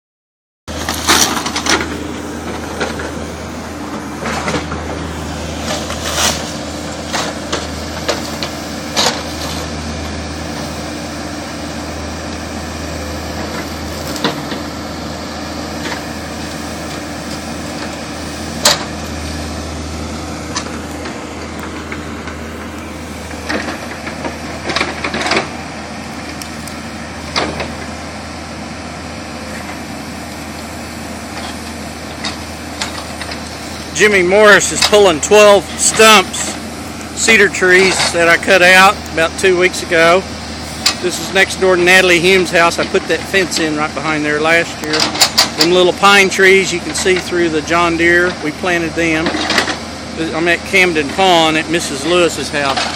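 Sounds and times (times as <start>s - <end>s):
diesel engine under load: 0.7s - 52.9s.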